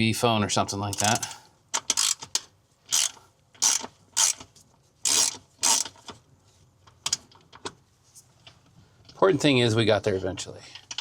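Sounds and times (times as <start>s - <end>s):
ratchet wrench clicking: 0.9s - 6.0s.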